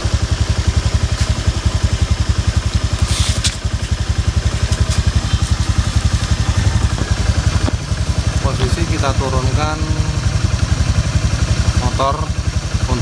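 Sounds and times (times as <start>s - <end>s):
scooter engine idling: 0.0s - 13.0s
short hissing scrape: 3.0s - 3.6s.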